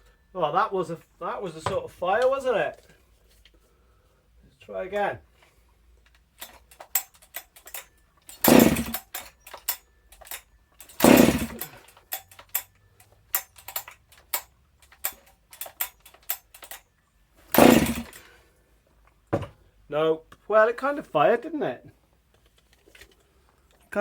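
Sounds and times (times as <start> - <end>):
chainsaw half-firing: 6.4 - 12.7, 17.5 - 18.4
recoil starter cord pulls: 6.4 - 16.8, 17.5 - 18.3.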